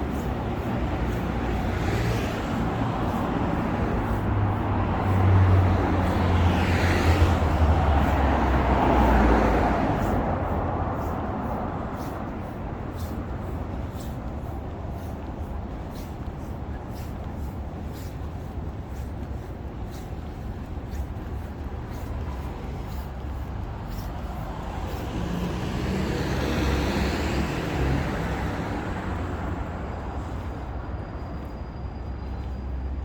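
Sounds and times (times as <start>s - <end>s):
street traffic: 0.0s - 33.0s
vehicle driving past: 24.4s - 29.8s.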